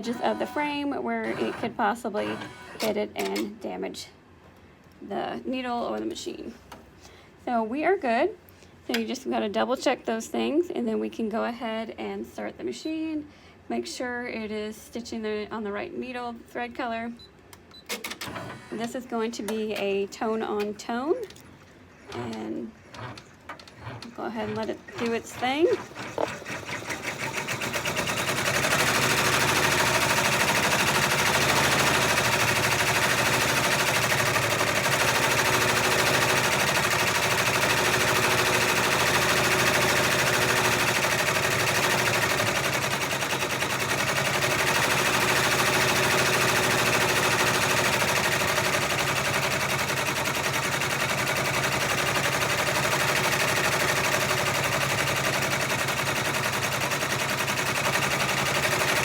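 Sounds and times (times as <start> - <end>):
embroidery machine stitching: 0.0 - 3.5, 17.9 - 19.0, 22.1 - 59.0.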